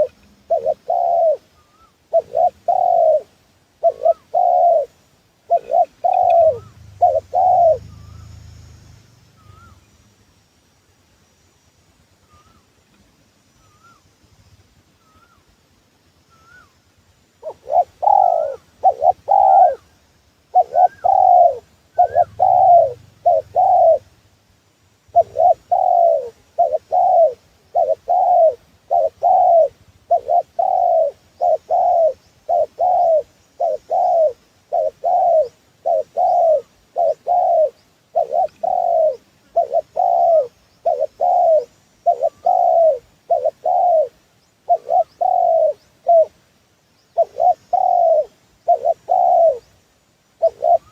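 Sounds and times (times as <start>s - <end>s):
dove cooing: 0.0s - 9.9s, 17.4s - 19.9s, 20.5s - 24.1s, 25.1s - 46.4s, 47.1s - 49.7s, 50.4s - 50.9s.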